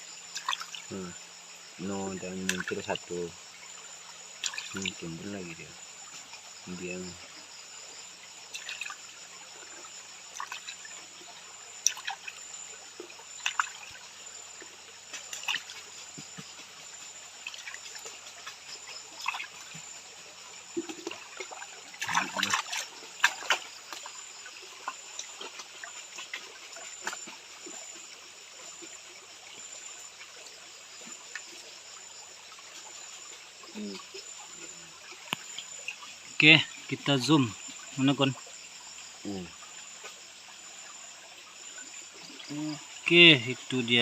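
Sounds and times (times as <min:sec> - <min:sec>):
water splashing in a swirled pan: 0:00.0 - 0:29.8.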